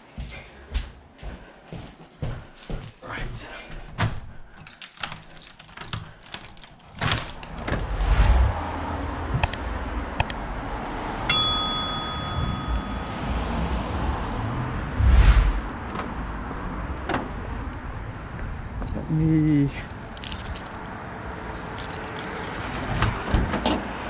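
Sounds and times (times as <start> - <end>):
sharp metallic ding: 11.3 - 13.3.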